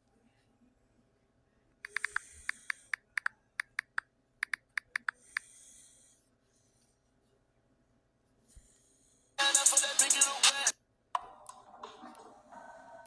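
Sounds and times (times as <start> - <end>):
sharp clicks like typing: 1.8 - 5.5.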